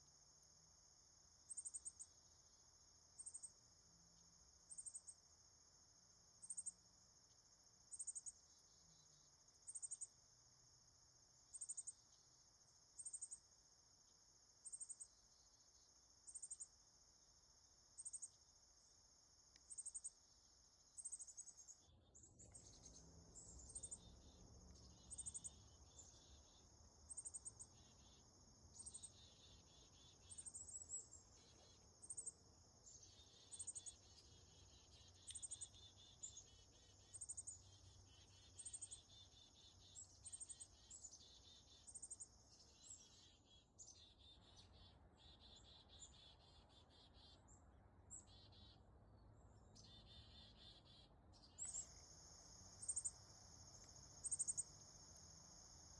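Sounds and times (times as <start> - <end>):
insect trilling: 51.6 - 55.9.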